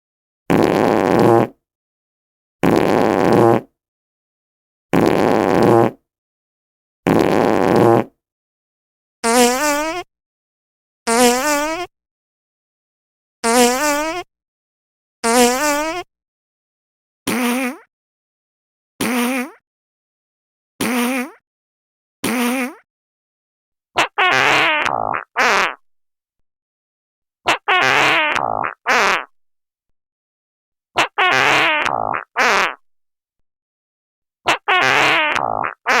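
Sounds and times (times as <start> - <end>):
fart sound effects: 0.5 - 1.6, 2.6 - 3.7, 4.9 - 6.0, 7.1 - 8.1, 9.2 - 10.1, 11.1 - 11.9, 13.4 - 14.3, 15.2 - 16.1, 17.3 - 17.9, 19.0 - 19.6, 20.8 - 21.4, 22.2 - 22.9, 24.0 - 25.8, 27.5 - 29.3, 31.0 - 32.8, 34.5 - 36.0.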